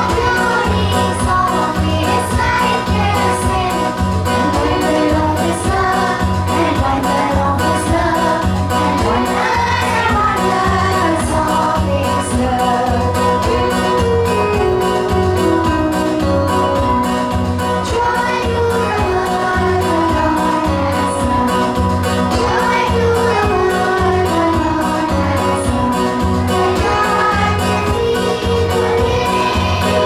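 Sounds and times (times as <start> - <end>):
person singing: 0.0 - 15.9, 17.8 - 30.0
instrumental music with beat: 0.0 - 30.0.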